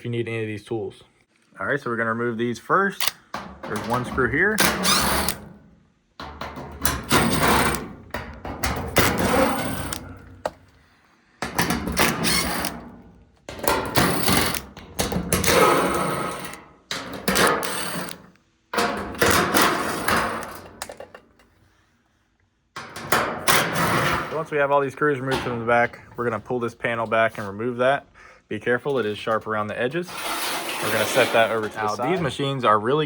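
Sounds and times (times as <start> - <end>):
cordless driver removing screws: 3.0 - 5.5, 6.8 - 7.9, 8.9 - 10.6, 11.6 - 12.8, 13.5 - 18.3.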